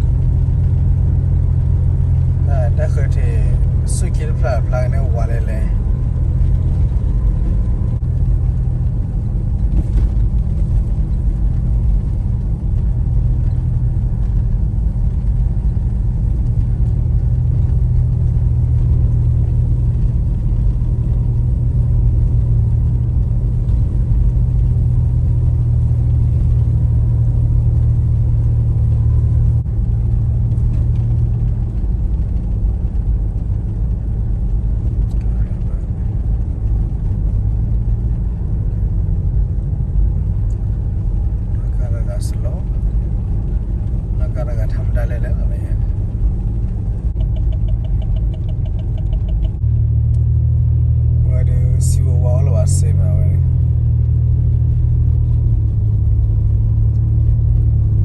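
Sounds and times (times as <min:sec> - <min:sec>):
road rumble: 0:00.0 - 0:58.0
vehicle engine driving: 0:00.0 - 0:58.0.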